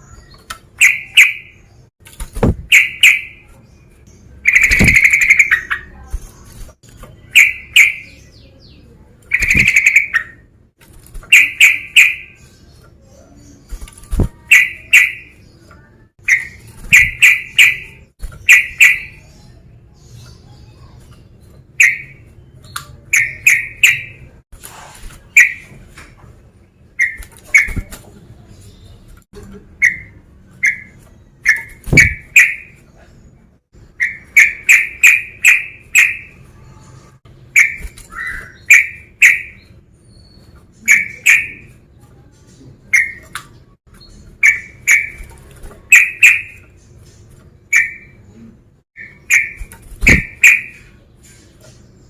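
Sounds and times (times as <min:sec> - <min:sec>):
bird chattering calls: 0:00.8 - 0:01.7, 0:02.5 - 0:03.5, 0:04.4 - 0:06.4, 0:07.2 - 0:08.4, 0:09.3 - 0:10.5, 0:11.2 - 0:12.4, 0:14.2 - 0:15.4, 0:16.2 - 0:19.3, 0:25.2 - 0:25.8, 0:29.8 - 0:32.8, 0:34.0 - 0:36.4, 0:37.5 - 0:39.7, 0:40.8 - 0:41.8, 0:44.4 - 0:46.8, 0:49.0 - 0:51.0
low thumps: 0:02.2 - 0:02.7, 0:50.0 - 0:50.4.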